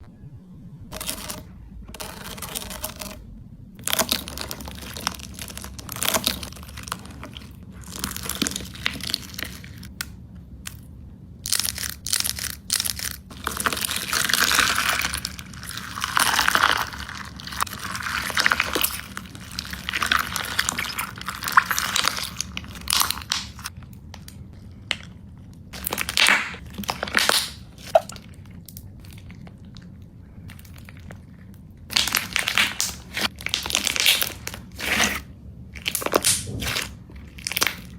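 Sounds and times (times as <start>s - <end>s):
slime crackling when squeezed: 11.5s - 23.7s, 25.8s - 28.8s, 31.9s - 35.2s, 35.8s - 37.9s.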